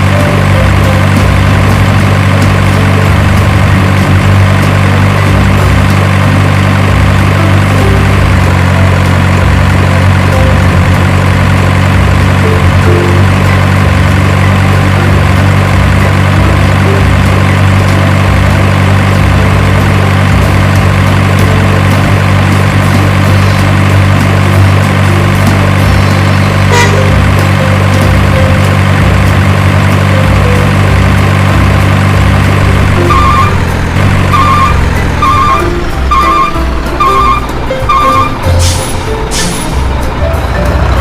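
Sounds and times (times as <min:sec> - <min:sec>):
truck engine idling: 0:00.0 - 0:41.0
high beeps: 0:33.1 - 0:33.6, 0:34.3 - 0:38.6.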